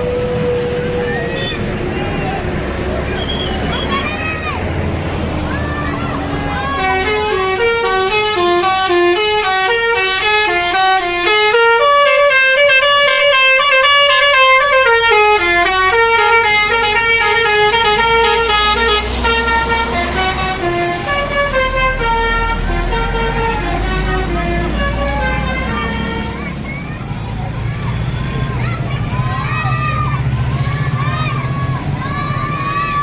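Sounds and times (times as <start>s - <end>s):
low engine rumble: 0.0s - 33.0s
bus horn playing a melody: 6.7s - 26.6s.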